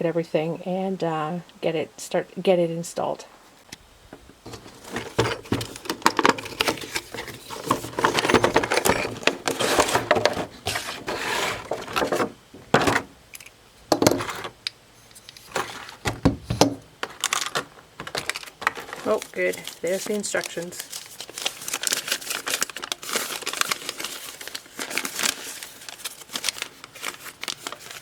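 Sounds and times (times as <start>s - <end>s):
cardboard packaging rustling: 4.4s - 13.2s, 14.0s - 28.0s
metal lock parts clinking: 7.9s - 9.4s.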